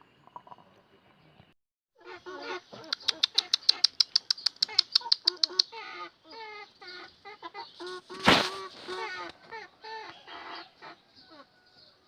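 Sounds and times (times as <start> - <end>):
chickens clucking: 2.0 - 12.0
fast even clicks: 2.9 - 5.7.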